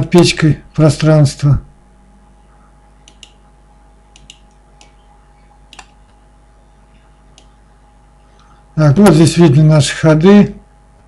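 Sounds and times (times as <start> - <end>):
low electrical hum: 0.0 - 11.0
computer mouse clicks: 3.0 - 3.4, 4.1 - 5.0, 5.7 - 6.2, 7.3 - 7.6.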